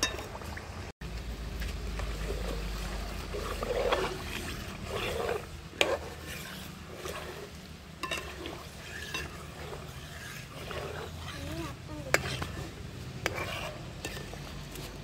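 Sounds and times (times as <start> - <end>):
spoon stirring in oil pan: 0.0 - 15.0
spoon clinking against pan: 8.0 - 8.3.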